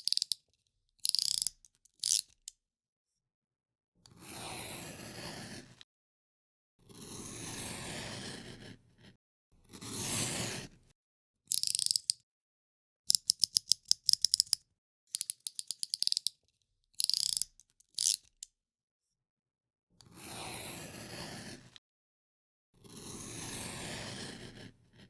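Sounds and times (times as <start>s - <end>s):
knife blade scraping a cut: 0.0s - 0.4s, 1.0s - 2.5s, 11.5s - 12.2s, 17.0s - 18.4s
knife blade slider clicking: 0.0s - 0.4s, 1.0s - 2.5s, 11.5s - 12.2s, 13.1s - 16.3s, 17.0s - 18.5s.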